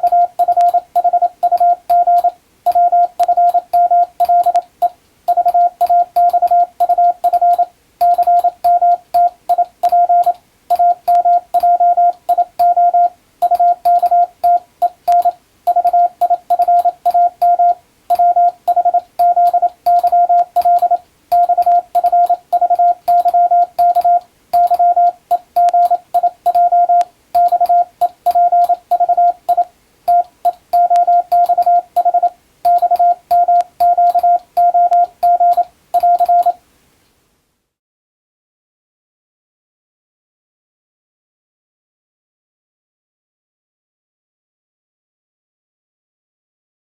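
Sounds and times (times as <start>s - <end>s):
keying clicks: 0.0s - 12.8s, 13.4s - 36.6s
morse code beeps: 0.0s - 36.6s.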